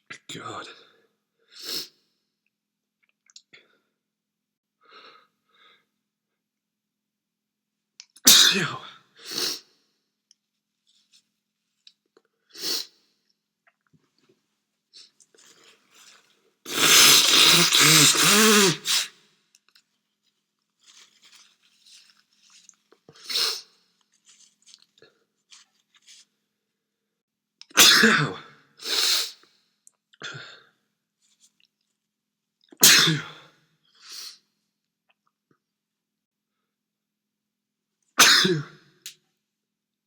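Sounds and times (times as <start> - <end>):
man sneezing: 8.3 - 8.9, 16.7 - 19.1, 27.8 - 28.5, 32.8 - 33.4, 38.2 - 38.7
faint sniffs and breaths: 15.0 - 19.2.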